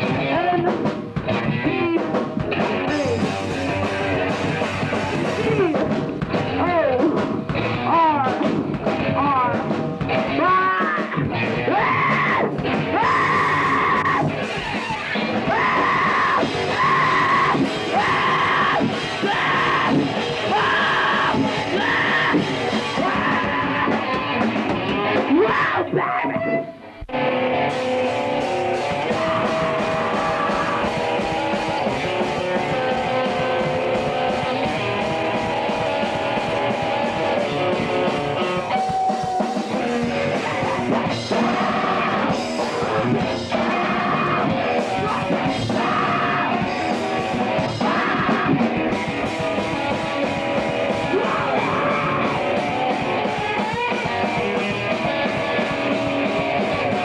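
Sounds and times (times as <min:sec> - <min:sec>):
punk rock music: 0:00.0 - 0:57.0
person singing: 0:10.3 - 0:24.2, 0:38.6 - 0:52.6.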